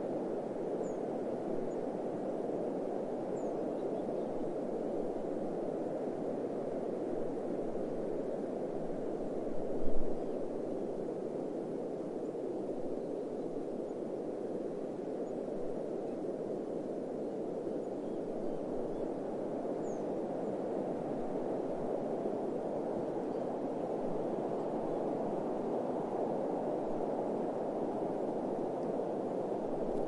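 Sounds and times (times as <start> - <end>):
desert wind rushing: 0.0 - 30.0.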